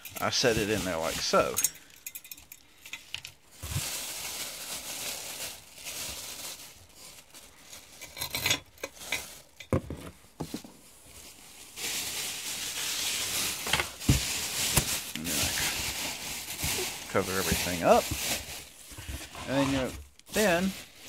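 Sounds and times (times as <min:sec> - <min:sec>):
bubble wrap rustling: 0:00.0 - 0:02.0, 0:03.0 - 0:21.0.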